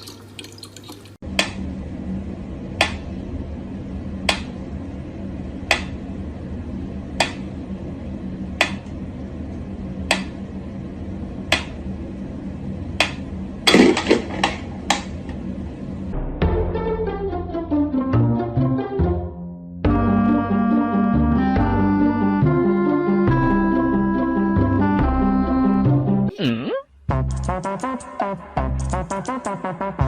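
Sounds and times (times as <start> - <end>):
steady low hum: 1.2 - 17.7.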